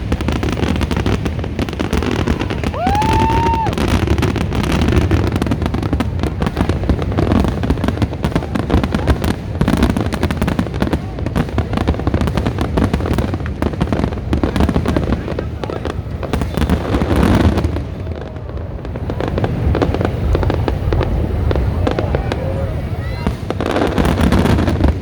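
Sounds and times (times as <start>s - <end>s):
firework bangs and crackles: 0.0s - 25.0s
firework whistle: 0.4s - 6.4s, 16.2s - 24.7s.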